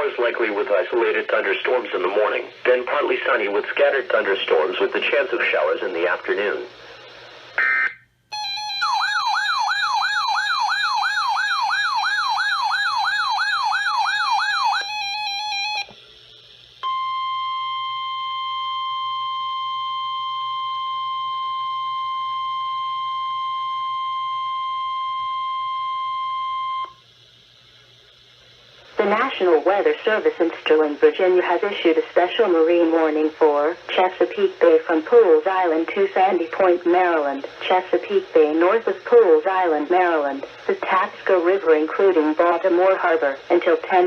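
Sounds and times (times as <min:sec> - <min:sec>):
warbling siren tone: 0:07.6 - 0:16.0
steady alarm tone: 0:07.6 - 0:30.4.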